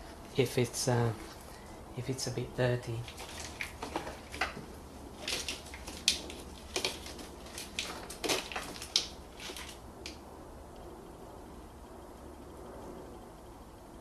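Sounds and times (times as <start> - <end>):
plastic parts clicking and scraping: 3.0 - 10.2.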